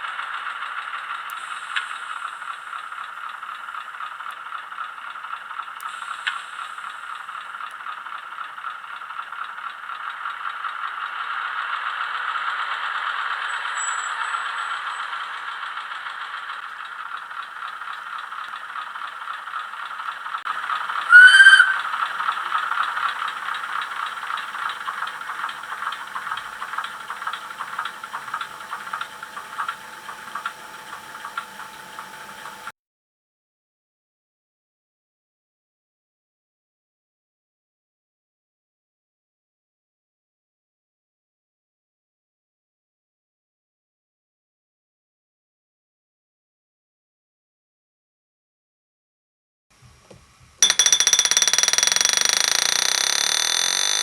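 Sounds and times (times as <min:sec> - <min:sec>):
small diesel engine running: 0:00.0 - 0:32.7, 0:50.6 - 0:54.0.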